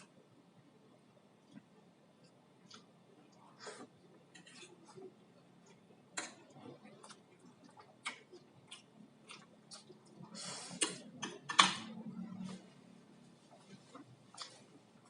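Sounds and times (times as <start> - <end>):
chewing with wet mouth smacks: 4.6 - 10.4.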